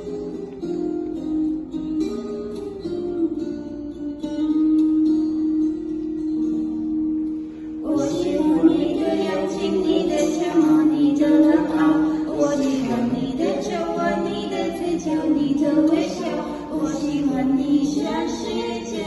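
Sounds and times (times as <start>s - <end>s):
group of people singing: 7.8s - 19.0s.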